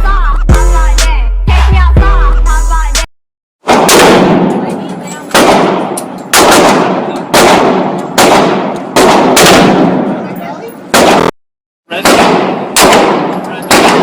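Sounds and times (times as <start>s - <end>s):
loud rifle shots: 3.6s - 10.3s, 10.9s - 11.3s, 11.9s - 14.0s.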